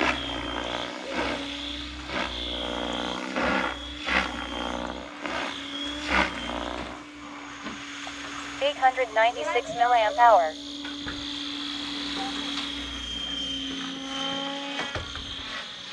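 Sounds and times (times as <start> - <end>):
helicopter motor whine: 0.0 - 15.9
rotor blades whirring: 0.0 - 15.9.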